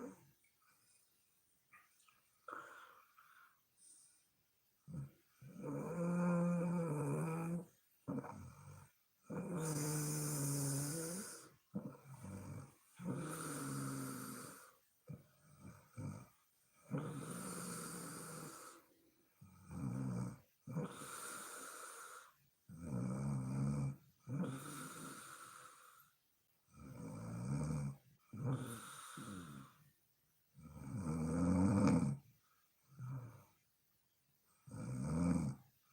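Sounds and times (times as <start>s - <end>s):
woman snoring: 0.0s - 0.2s, 2.5s - 3.2s, 4.9s - 18.9s, 19.5s - 26.1s, 26.8s - 29.8s, 30.6s - 32.2s, 34.6s - 35.6s.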